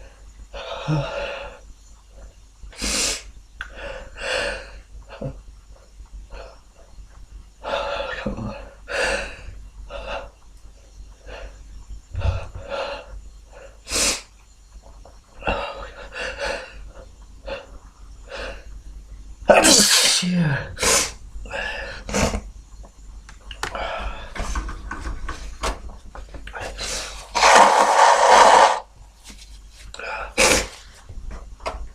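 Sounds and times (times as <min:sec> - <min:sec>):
person sniffing: 0:13.9 - 0:14.3, 0:19.7 - 0:21.2, 0:26.7 - 0:28.9, 0:30.4 - 0:31.0
person sneezing: 0:19.5 - 0:21.2, 0:30.4 - 0:30.8.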